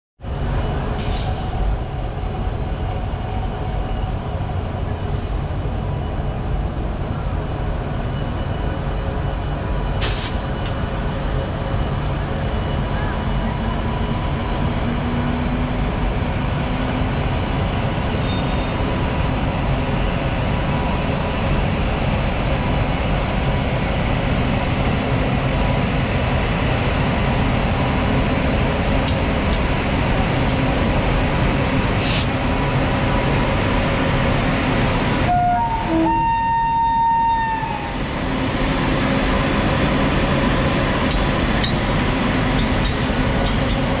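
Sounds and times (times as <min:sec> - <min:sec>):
goods train rumbling past: 0:00.2 - 0:44.0.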